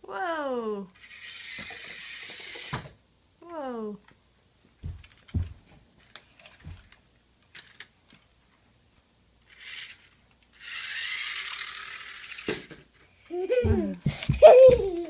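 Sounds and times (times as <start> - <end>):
small electric motor whirring: 1.0 - 2.9, 9.5 - 12.7
toy car clicks and knocks: 1.0 - 3.0, 6.0 - 8.2, 9.5 - 12.9.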